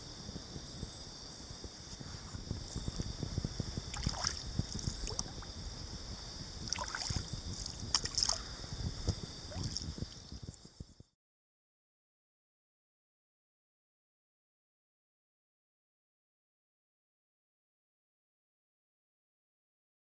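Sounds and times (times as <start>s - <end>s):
wind buffeting microphone: 0.0s - 11.1s
insect chorus: 0.0s - 11.2s
water splashing and lapping: 3.9s - 5.4s, 6.6s - 8.5s, 9.5s - 10.3s.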